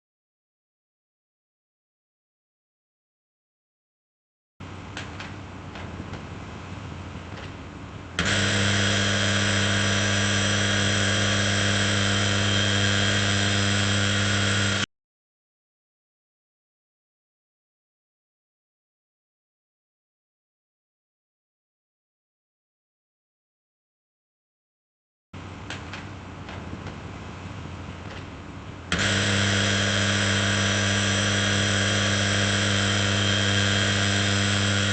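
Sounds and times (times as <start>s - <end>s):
electric drill whining: 8.2s - 14.9s, 28.9s - 34.9s.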